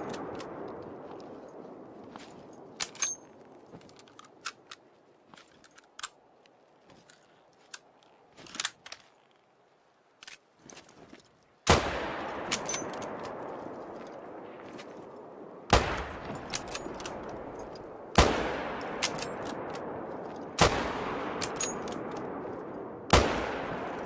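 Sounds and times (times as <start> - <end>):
rifle bolt metallic clicks: 0.0 - 1.6, 2.2 - 9.4, 12.2 - 14.2, 15.7 - 24.0
rifle shot with echo: 11.7 - 14.4, 15.6 - 17.3, 18.0 - 24.0.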